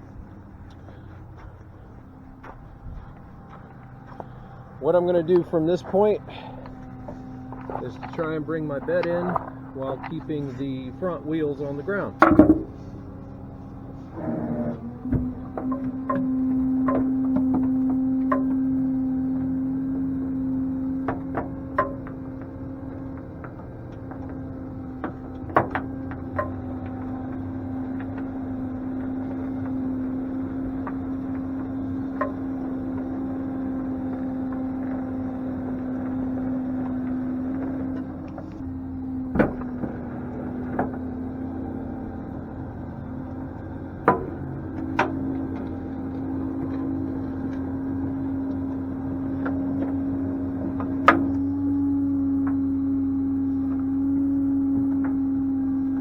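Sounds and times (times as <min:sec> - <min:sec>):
hydraulics humming: 0:00.0 - 0:56.0
metal clanks and knocks: 0:02.4 - 0:18.8, 0:21.0 - 0:35.1, 0:42.1 - 0:51.6.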